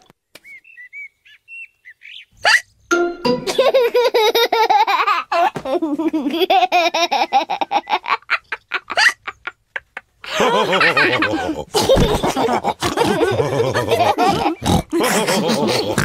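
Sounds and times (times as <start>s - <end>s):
cartoon voices laughing: 3.4s - 16.0s.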